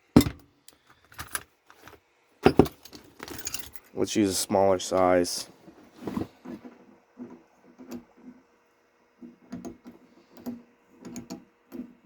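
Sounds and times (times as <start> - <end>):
metal hand tools clinking: 3.2 - 3.9.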